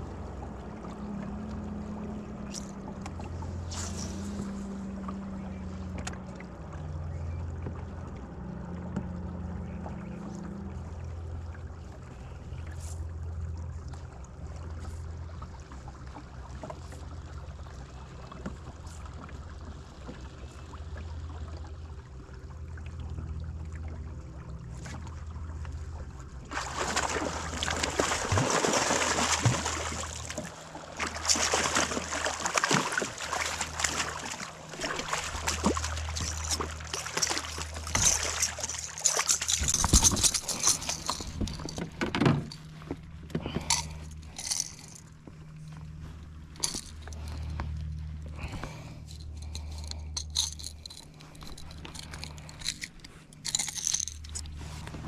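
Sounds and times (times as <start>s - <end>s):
low hum: 18.7s - 55.0s
fish splashing: 26.5s - 54.8s.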